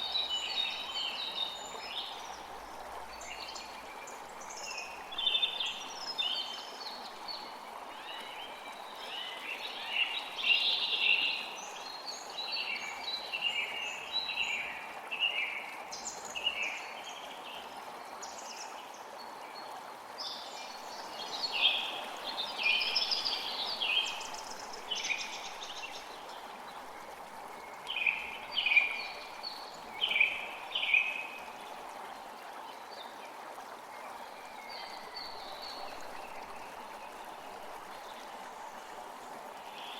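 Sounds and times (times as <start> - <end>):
creek running: 0.0 - 39.9
songbirds singing: 20.3 - 31.7.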